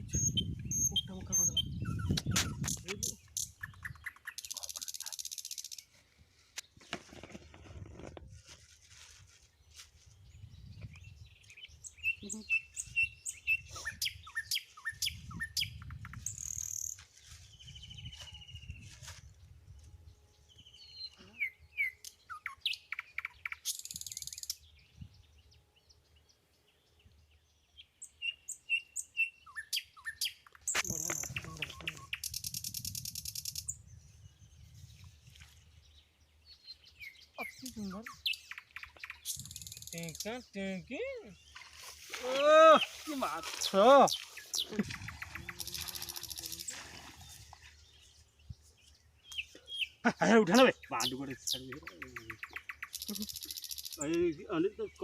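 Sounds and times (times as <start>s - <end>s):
high buzzing bird trill: 0.0s - 5.9s, 42.7s - 46.8s, 49.8s - 55.0s
small birds chirping: 0.0s - 8.2s, 9.4s - 55.0s.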